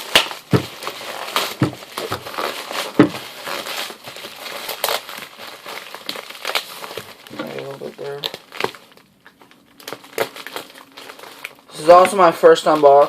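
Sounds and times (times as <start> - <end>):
sharp cracks: 0.0 - 4.0
packaging crinkling and tearing: 0.0 - 13.0.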